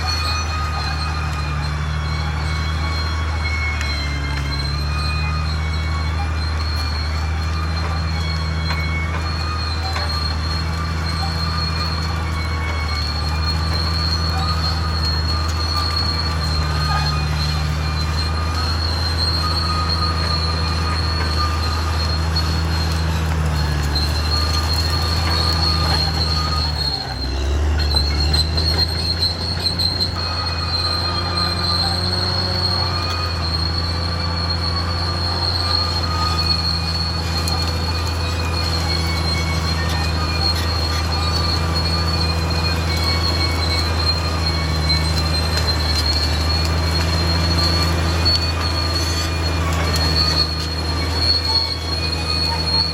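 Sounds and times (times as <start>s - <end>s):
bulldozer diesel engine droning: 0.0s - 52.9s
steel tracks squealing: 0.0s - 52.9s.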